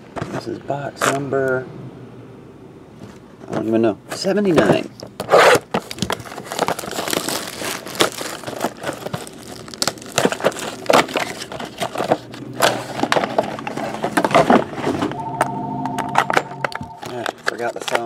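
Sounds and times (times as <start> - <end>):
plastic wrapping crinkling: 5.5 - 14.8, 17.0 - 18.0.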